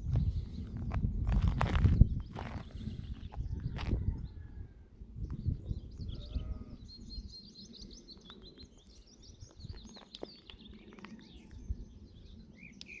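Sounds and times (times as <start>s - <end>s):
low rumbling microphone noise: 0.0s - 7.3s
small birds chirping: 0.1s - 4.6s, 5.2s - 13.0s
faint bleat: 6.1s - 6.9s.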